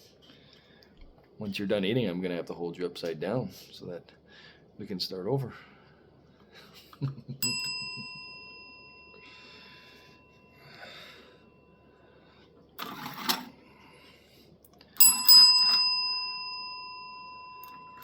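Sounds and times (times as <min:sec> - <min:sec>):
small metal bell ringing: 0:07.4 - 0:11.9, 0:15.0 - 0:18.0.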